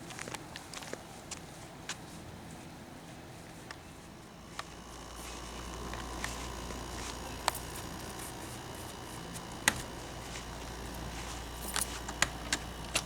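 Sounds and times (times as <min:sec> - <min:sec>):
sharp clicks and taps: 0:05.4 - 0:13.0.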